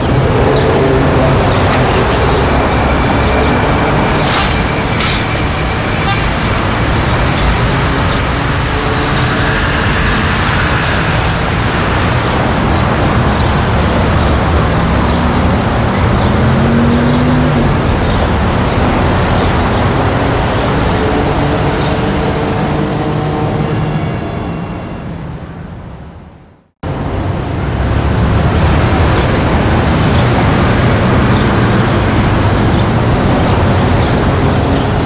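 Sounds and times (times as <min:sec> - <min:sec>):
street traffic: 0:00.0 - 0:35.0
vehicle engine revving: 0:06.4 - 0:23.0.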